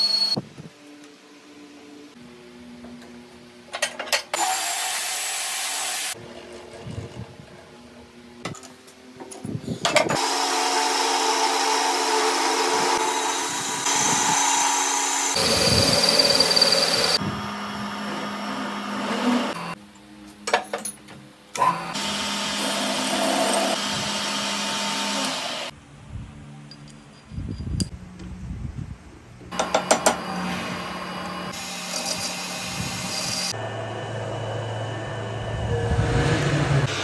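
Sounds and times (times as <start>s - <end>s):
lathe cutting metal: 10.2s - 19.8s, 21.9s - 25.7s, 29.6s - 37.0s
metal lathe humming: 10.2s - 19.8s, 21.6s - 25.7s, 29.6s - 37.0s.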